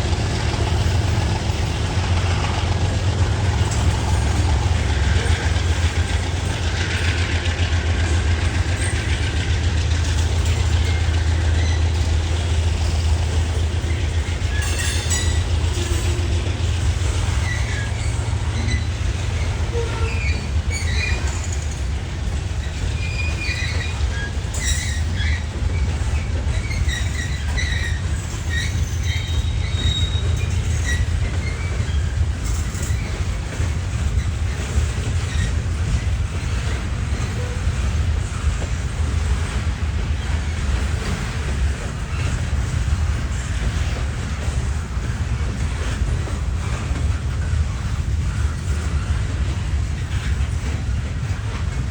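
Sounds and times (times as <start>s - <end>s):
diesel train rumble: 0.0s - 51.9s
wheel squeals: 8.4s - 22.0s, 22.6s - 38.5s.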